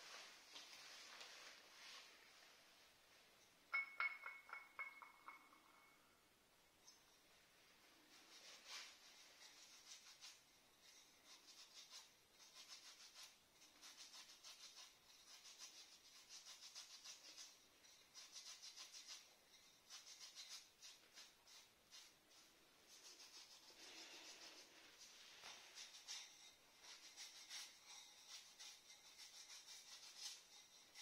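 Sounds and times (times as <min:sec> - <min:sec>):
faint scratchy rubbing: 0:07.8 - 0:17.6, 0:18.3 - 0:31.0.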